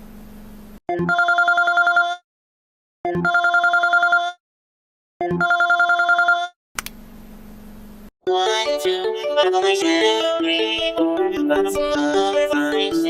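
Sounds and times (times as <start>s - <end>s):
telephone ringing: 1.0s - 2.2s, 3.2s - 4.4s, 5.3s - 6.5s
brief click: 6.8s - 7.0s.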